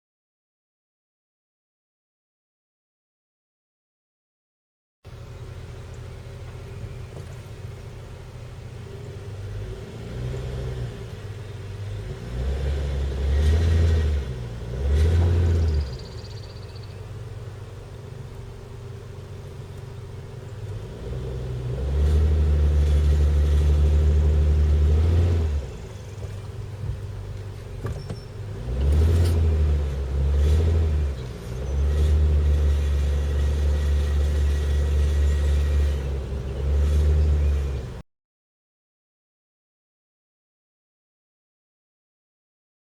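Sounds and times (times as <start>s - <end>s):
car engine idling and revving: 5.1s - 38.0s.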